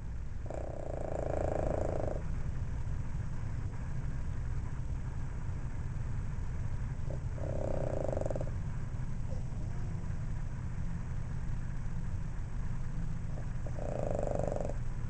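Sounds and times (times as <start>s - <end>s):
steady low rumble: 0.0s - 15.0s
dog snoring: 0.4s - 2.4s, 7.0s - 10.3s, 13.3s - 14.9s.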